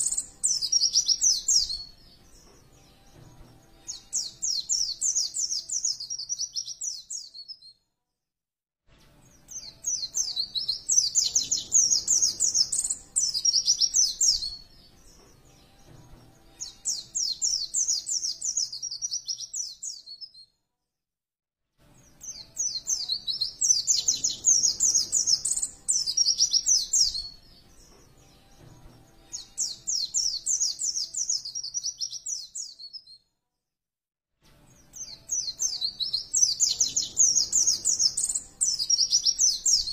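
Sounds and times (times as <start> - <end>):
bird twittering rapid high notes: 22.2 - 27.4.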